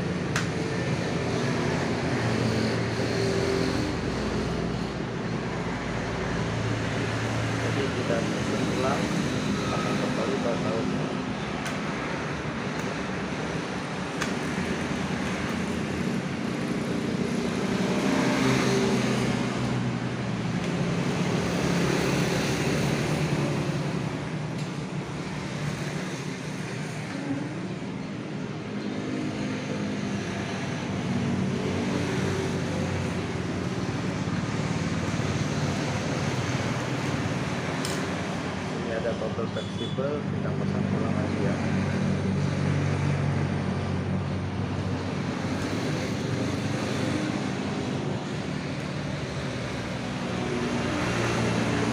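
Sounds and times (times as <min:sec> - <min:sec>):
road traffic rumble: 0:00.0 - 0:51.9.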